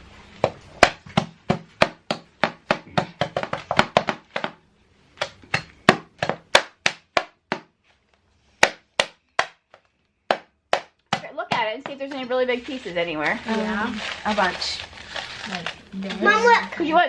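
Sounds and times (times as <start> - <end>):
rolling pin striking candy: 0.4 - 7.8, 8.5 - 12.2.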